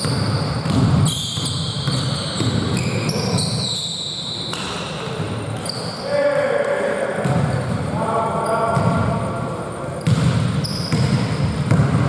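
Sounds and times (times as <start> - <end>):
basketball dribbling: 0.0 - 3.0, 10.0 - 12.0
shoe squeaks: 0.0 - 6.7, 8.4 - 9.0, 10.0 - 11.4.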